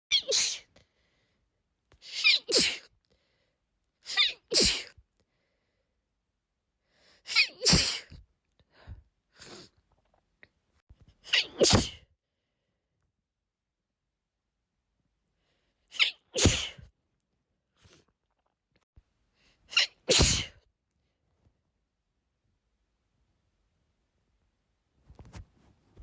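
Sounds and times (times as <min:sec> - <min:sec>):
woman sneezing: 0:00.1 - 0:00.7, 0:02.0 - 0:02.9, 0:04.1 - 0:05.0, 0:07.3 - 0:08.2, 0:11.2 - 0:12.1, 0:16.0 - 0:16.9, 0:19.7 - 0:20.6.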